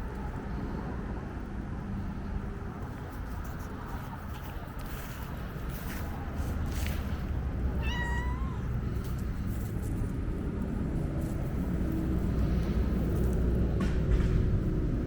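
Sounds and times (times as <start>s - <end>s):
cat meowing: 7.7s - 8.8s.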